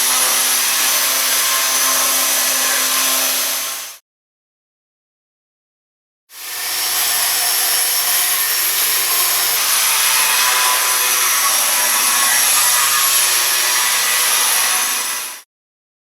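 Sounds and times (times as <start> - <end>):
angle grinder running: 6.4 - 15.4.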